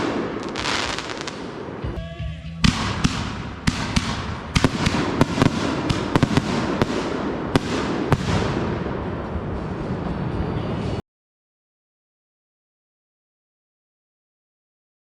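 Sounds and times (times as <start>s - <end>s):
fireworks bangs: 0.0s - 2.0s, 2.6s - 10.8s
fireworks crackling: 0.0s - 10.4s.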